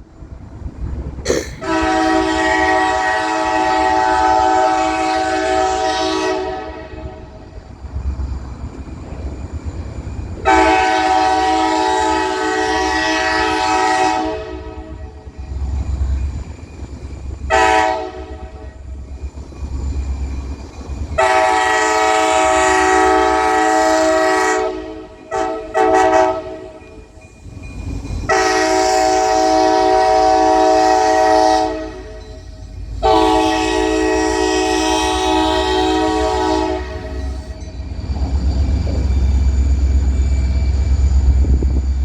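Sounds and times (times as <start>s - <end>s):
low locomotive rumble: 0.0s - 42.0s
locomotive air horn blasts: 1.6s - 7.4s, 10.5s - 15.0s, 17.5s - 18.6s, 21.2s - 26.7s, 28.3s - 32.1s, 33.0s - 37.4s.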